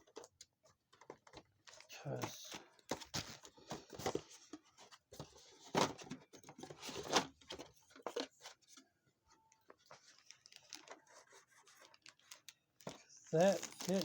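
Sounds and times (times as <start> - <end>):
bag rustling and crinkling: 13.3 - 14.0.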